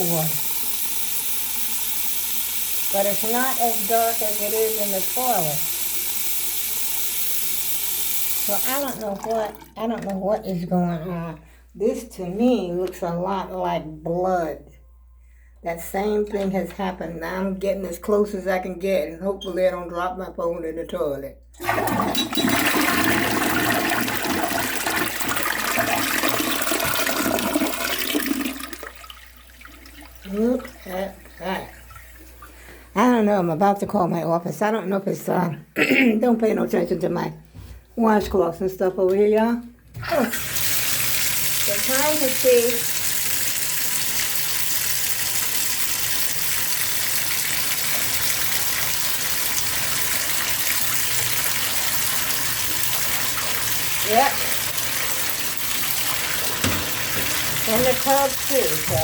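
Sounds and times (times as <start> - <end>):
toilet flushing: 0.0 - 10.3, 21.6 - 33.2, 39.2 - 59.0
tap water running: 0.0 - 10.6, 21.6 - 34.3, 36.3 - 59.0.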